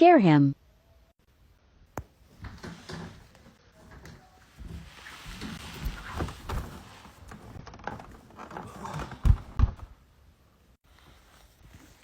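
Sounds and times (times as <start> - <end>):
knocks and thumps: 2.4 - 10.0.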